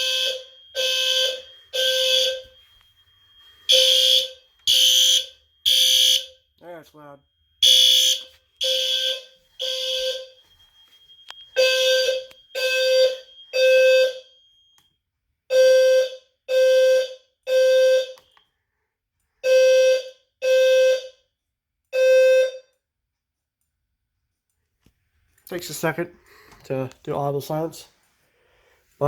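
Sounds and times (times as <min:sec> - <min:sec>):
fire alarm horn buzzing: 0:00.0 - 0:18.6, 0:19.4 - 0:22.8.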